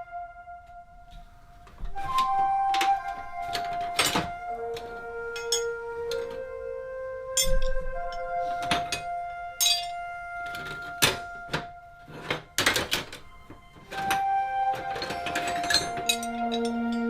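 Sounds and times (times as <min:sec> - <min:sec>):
background music with held notes: 0:00.0 - 0:17.0
sharp knocks and clinks: 0:09.6 - 0:10.0.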